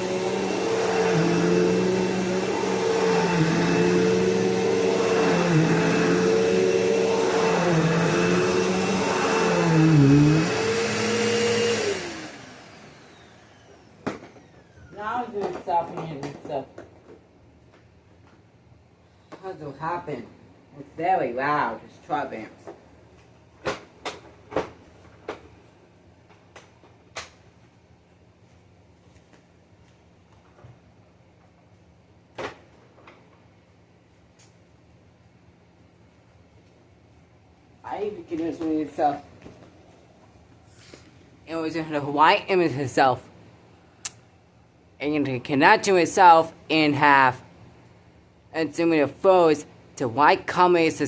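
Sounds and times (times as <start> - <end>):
vacuum cleaner motor running: 0.0 - 15.2.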